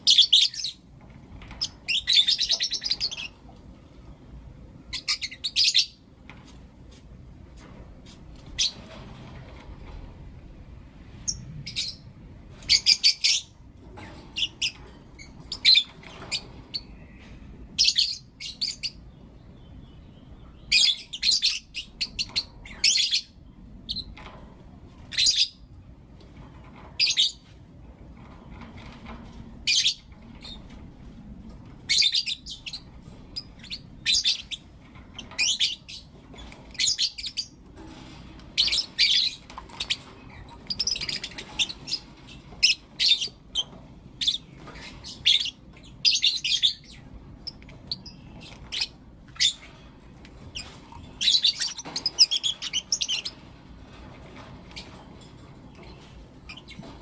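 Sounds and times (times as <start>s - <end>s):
lovebirds chirping: 1.6s - 3.9s, 4.9s - 6.1s, 11.2s - 24.2s, 29.6s - 30.8s, 31.8s - 57.0s.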